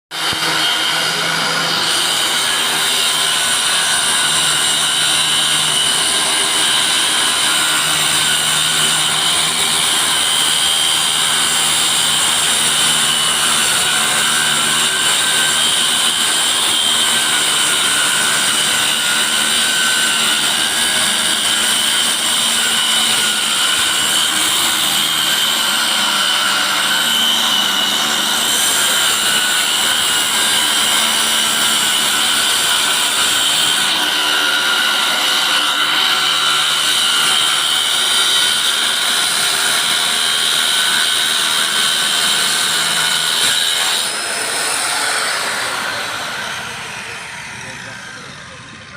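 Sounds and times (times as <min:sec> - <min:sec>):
circular saw running: 0:00.1 - 0:48.9.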